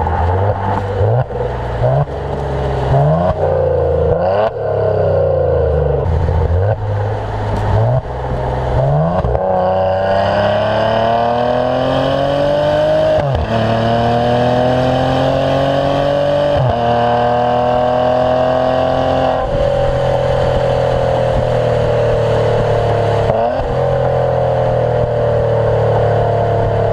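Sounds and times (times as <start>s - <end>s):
car exhaust accelerating: 0.0s - 26.9s.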